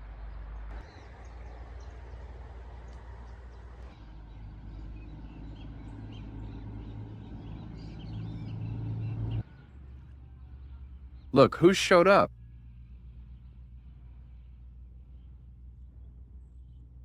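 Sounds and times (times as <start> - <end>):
low engine hum: 0.0 - 17.0
birds chirping: 3.2 - 9.5.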